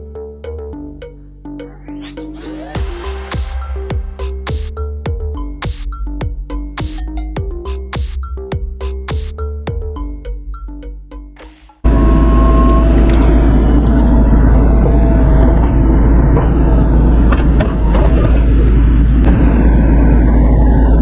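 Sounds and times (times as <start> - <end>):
music: 0.0 - 11.9
faint wavering whine: 11.9 - 17.4
excavator engine and hydraulics drone: 11.9 - 21.0.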